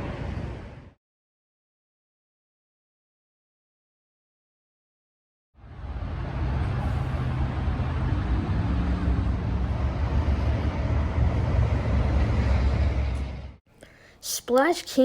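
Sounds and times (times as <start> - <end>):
road noise: 0.0 - 1.0, 5.6 - 13.6
vehicle engine rumbling: 5.6 - 13.6.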